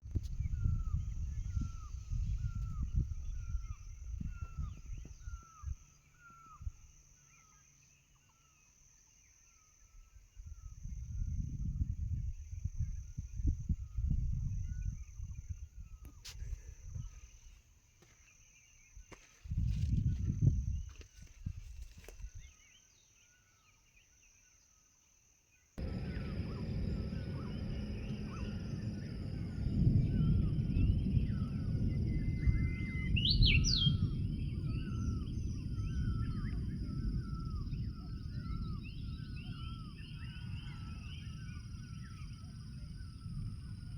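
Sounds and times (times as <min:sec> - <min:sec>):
wind rumble on microphone: 0:00.0 - 0:07.3, 0:09.9 - 0:17.7, 0:18.8 - 0:22.6, 0:25.8 - 0:43.9
bird calling: 0:25.8 - 0:43.3
low rumbling and thumps: 0:25.8 - 0:43.9
steady high whine: 0:25.8 - 0:43.9.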